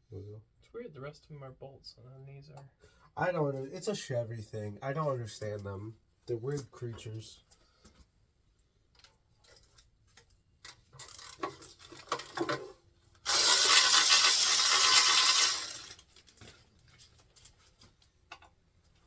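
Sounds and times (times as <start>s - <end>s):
metal tools clinking: 13.3s - 16.2s.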